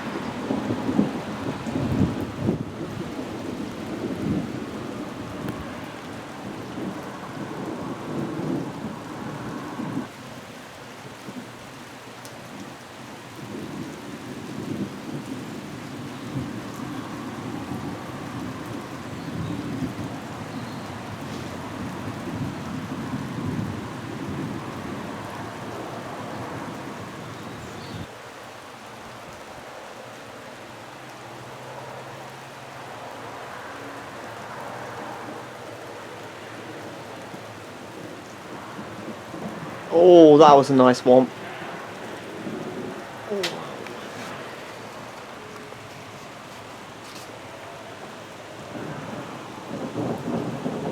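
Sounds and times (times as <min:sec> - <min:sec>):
rolling rumble of thunder: 0:00.0 - 0:10.1, 0:13.3 - 0:28.1, 0:36.5 - 0:39.9, 0:41.2 - 0:45.8, 0:48.0 - 0:50.9
rain falling: 0:00.0 - 0:50.9.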